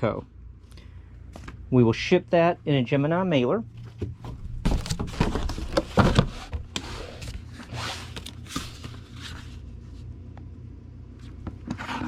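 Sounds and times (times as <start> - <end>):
cardboard and paper rustling: 3.9 - 10.0.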